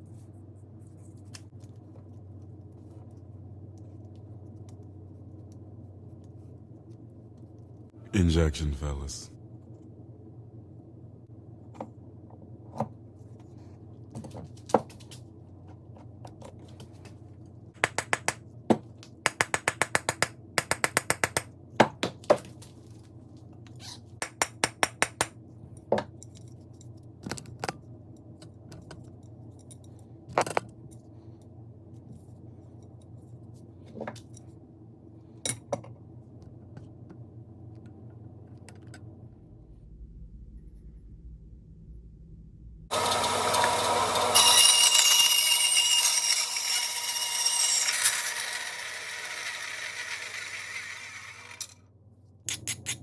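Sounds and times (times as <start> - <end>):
steady low hum: 0.0 - 14.5, 25.3 - 43.0.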